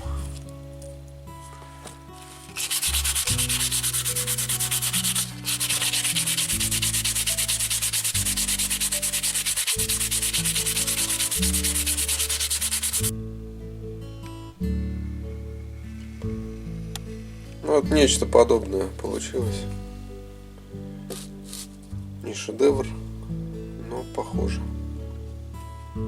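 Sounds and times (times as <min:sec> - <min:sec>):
wood being sanded: 0:02.6 - 0:13.1.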